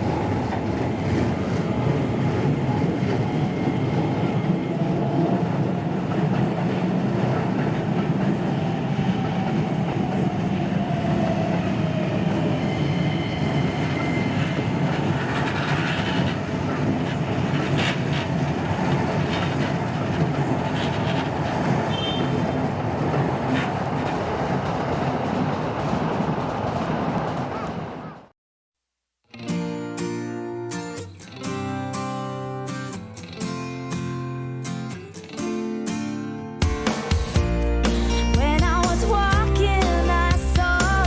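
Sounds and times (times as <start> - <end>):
train rumbling on rails: 0.0 - 28.3.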